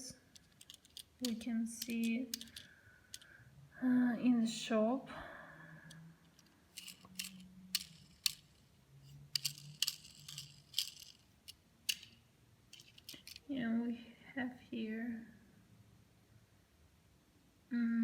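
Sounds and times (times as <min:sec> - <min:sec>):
metal toy cars clicking and rattling: 0:00.0 - 0:03.4, 0:05.9 - 0:13.5.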